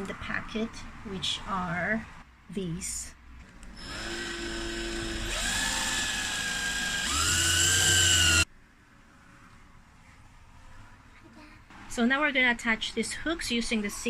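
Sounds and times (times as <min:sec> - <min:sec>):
power drill driving screws: 0:03.8 - 0:08.4.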